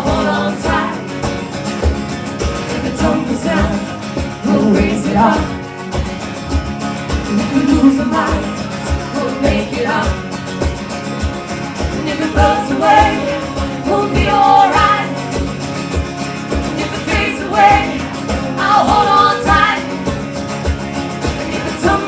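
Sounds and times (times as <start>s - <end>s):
women singing: 0.0s - 1.2s, 2.7s - 5.6s, 7.3s - 10.3s, 12.0s - 15.2s, 16.7s - 20.0s, 21.3s - 22.0s
guitar: 0.0s - 22.0s.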